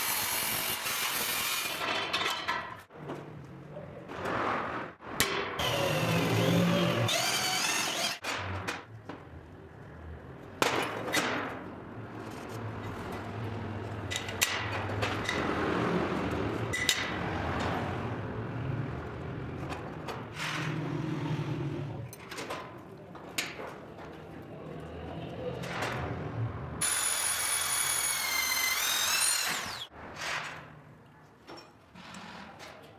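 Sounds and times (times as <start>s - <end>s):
power tool running: 5.6s - 8.2s, 26.8s - 29.9s.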